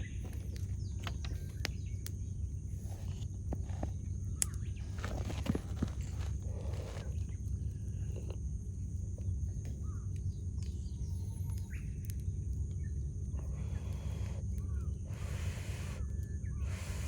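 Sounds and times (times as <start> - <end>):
bird calls: 12.7 - 17.0.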